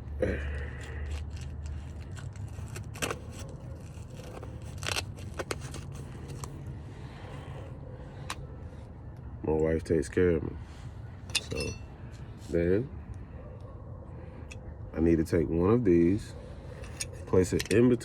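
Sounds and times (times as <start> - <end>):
clicks of small bolts being handled: 11.3 - 11.8, 16.8 - 18.0.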